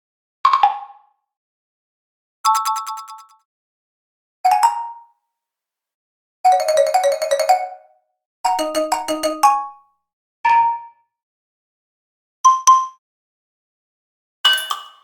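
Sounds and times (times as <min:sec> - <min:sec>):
bell-like percussion strikes: 0:14.5 - 0:15.0.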